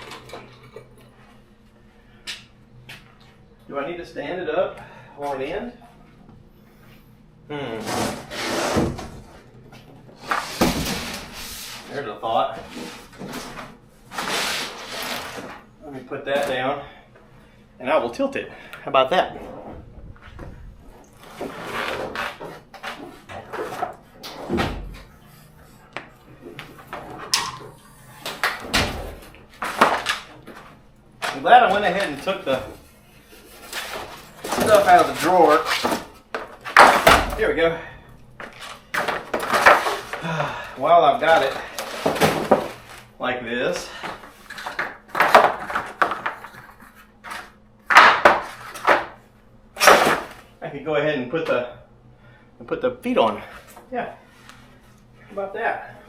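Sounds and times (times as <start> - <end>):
tool chest scraping and rustling: 7.8 - 9.5, 10.2 - 15.6, 19.3 - 37.1.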